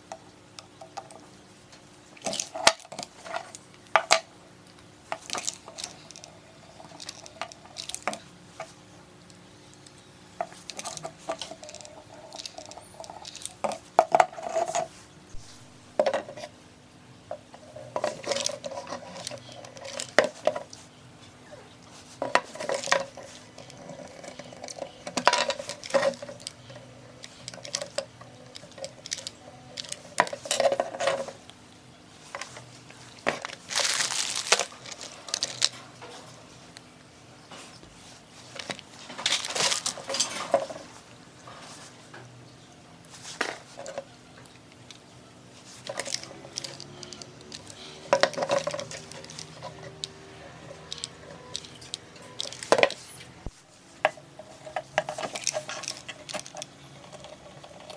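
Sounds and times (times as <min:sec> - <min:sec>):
metal parts clinking: 0:05.2 - 0:08.2, 0:10.5 - 0:13.8, 0:22.3 - 0:31.4, 0:33.2 - 0:35.8, 0:38.6 - 0:40.9, 0:45.8 - 0:53.1, 0:54.5 - 0:57.9.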